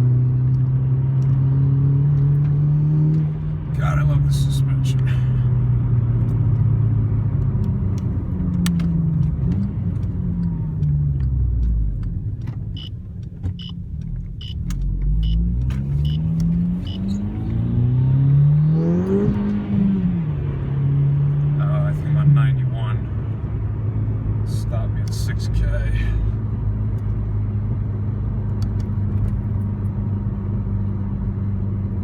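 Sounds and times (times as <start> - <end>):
car engine revving while driving: 0.0 - 32.0
regular ticking: 10.2 - 17.2.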